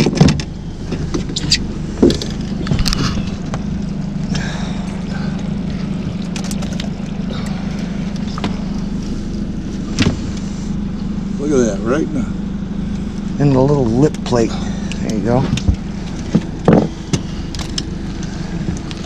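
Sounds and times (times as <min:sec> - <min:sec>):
sharp clicks and knocks: 0:00.0 - 0:03.7
engine humming: 0:00.0 - 0:19.0.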